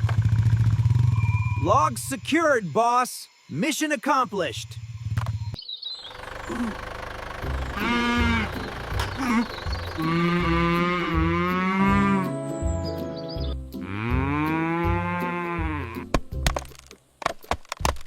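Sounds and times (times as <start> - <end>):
background music with low beat: 7.4 - 17.6
cow mooing: 7.5 - 12.4, 13.8 - 16.1.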